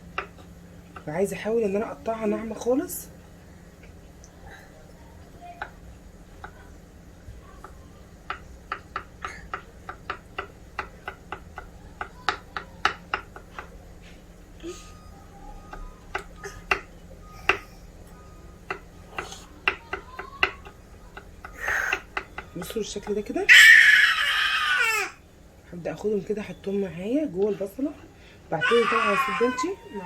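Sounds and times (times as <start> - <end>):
knife chopping garlic: 7.6 - 13.8, 18.6 - 23.2.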